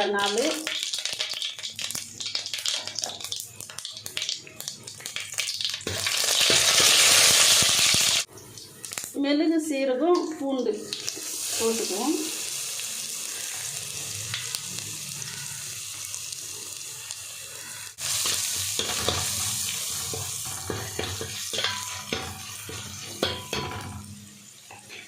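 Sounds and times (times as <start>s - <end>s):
spices sizzling in hot oil: 0.0s - 9.2s, 10.2s - 25.0s.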